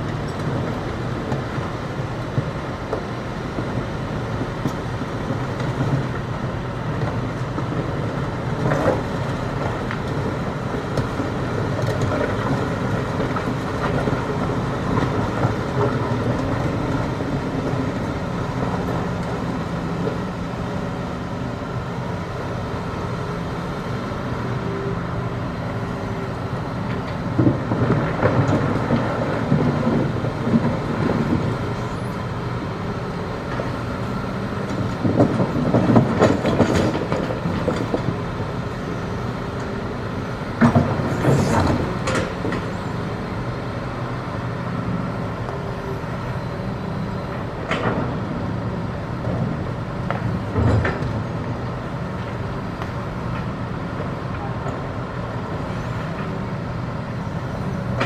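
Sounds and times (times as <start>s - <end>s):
diesel engine running under load: 0.0s - 58.0s.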